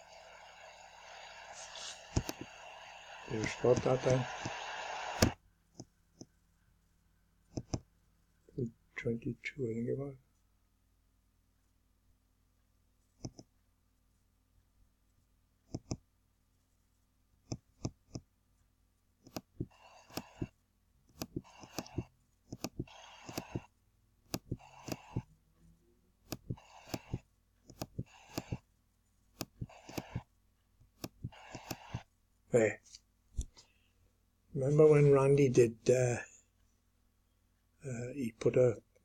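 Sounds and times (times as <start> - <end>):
short scratchy bursts: 0.0 - 5.4, 21.2 - 23.7, 24.3 - 25.3, 26.3 - 28.7, 29.4 - 30.3, 31.0 - 32.1
computer mouse clicking: 1.6 - 4.6, 5.2 - 6.3, 7.5 - 7.9, 13.2 - 13.5, 15.7 - 16.1, 17.4 - 18.3, 19.2 - 20.5, 21.1 - 23.7, 24.3 - 25.3, 26.3 - 28.7, 29.4 - 32.1.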